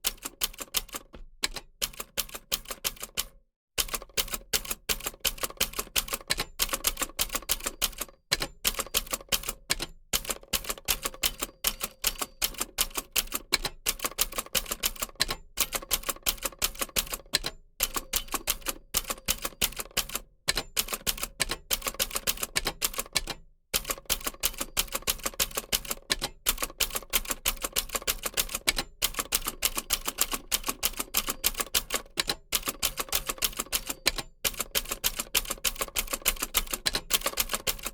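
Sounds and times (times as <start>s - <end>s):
typewriter key strikes: 0.0s - 37.9s.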